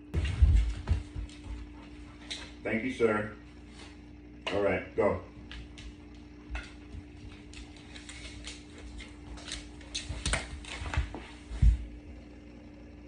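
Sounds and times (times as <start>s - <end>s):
faint steady hum: 0.0s - 13.0s
dog claws clicking on hard floor: 0.2s - 2.6s, 5.4s - 11.8s.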